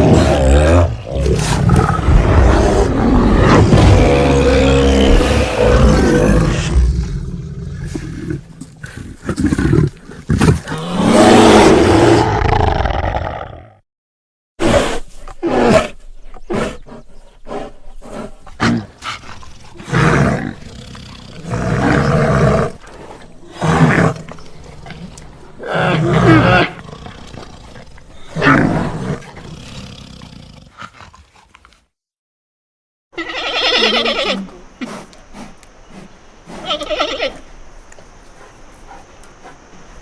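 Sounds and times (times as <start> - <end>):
creature roaring: 0.0 - 9.0, 9.6 - 13.8
creature growling: 0.0 - 13.8.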